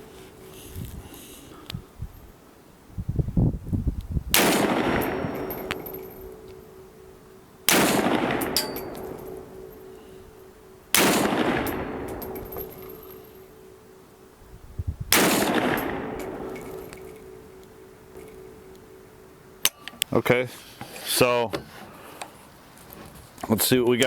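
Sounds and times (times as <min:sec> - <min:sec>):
rifle shots echoing: 0:04.3 - 0:13.9, 0:15.1 - 0:19.8.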